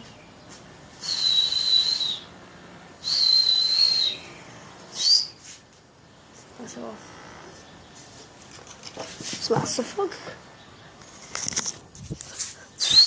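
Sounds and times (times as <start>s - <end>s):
person whistling: 1.0s - 2.3s, 3.0s - 4.2s, 12.8s - 13.0s.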